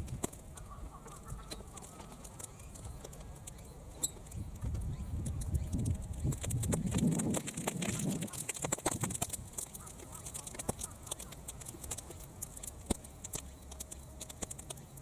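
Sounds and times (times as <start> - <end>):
weeds crackling in fire: 4.2 - 15.0.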